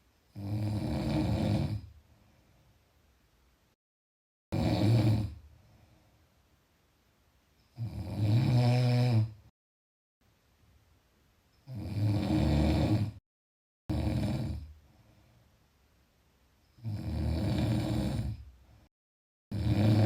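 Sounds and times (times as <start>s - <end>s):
person snoring: 0.3s - 1.9s, 4.5s - 5.4s, 7.8s - 9.4s, 11.7s - 13.2s, 13.9s - 14.8s, 16.8s - 18.5s, 19.5s - 20.0s.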